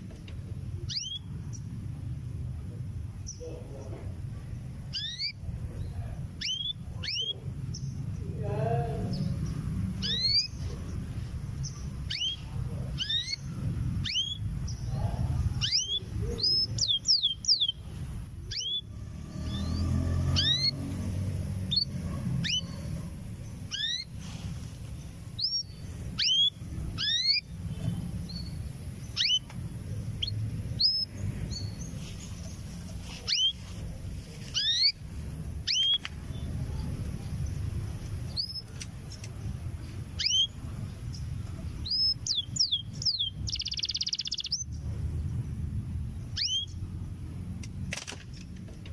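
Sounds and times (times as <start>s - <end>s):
canary chirping: 0.7s - 1.9s, 4.6s - 8.3s, 9.0s - 44.8s, 46.1s - 46.8s.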